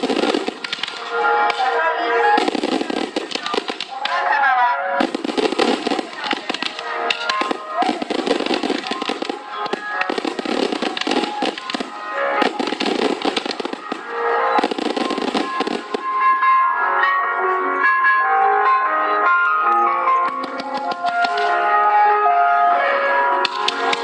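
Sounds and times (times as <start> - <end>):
fireworks crackling: 0.0 - 4.3, 5.0 - 16.3, 20.3 - 21.7, 23.4 - 24.0
music playing: 0.0 - 24.0.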